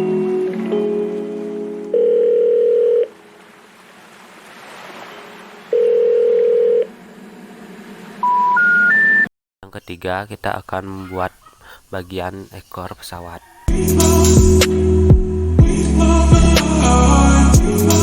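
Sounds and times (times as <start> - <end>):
short beeps rising in pitch: 8.2 - 9.3.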